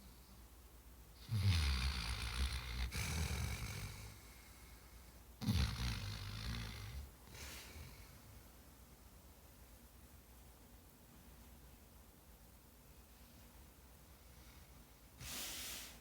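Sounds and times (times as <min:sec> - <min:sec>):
dog snoring: 0:01.2 - 0:04.4, 0:05.4 - 0:08.1.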